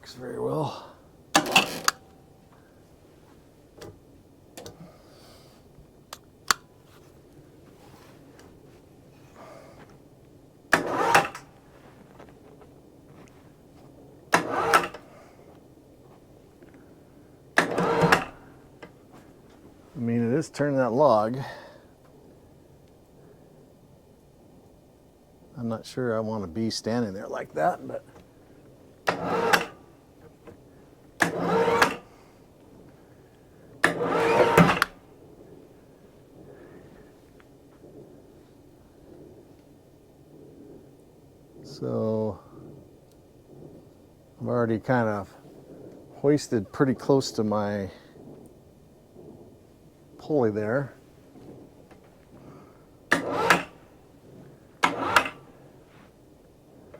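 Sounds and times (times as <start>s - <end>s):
winch hoist pulling: 1.4s - 2.1s, 10.7s - 11.5s, 14.3s - 15.1s, 17.6s - 18.9s, 29.0s - 29.9s, 31.2s - 32.1s, 33.8s - 35.0s, 53.1s - 53.9s, 54.8s - 55.5s.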